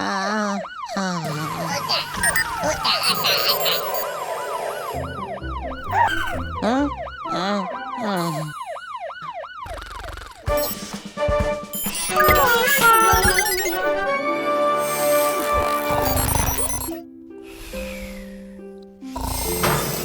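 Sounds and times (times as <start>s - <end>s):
cartoon siren whooping: 0.0s - 10.5s
cartoon sound effects: 0.0s - 10.7s, 11.9s - 14.0s
background music: 1.4s - 8.7s, 10.5s - 20.0s.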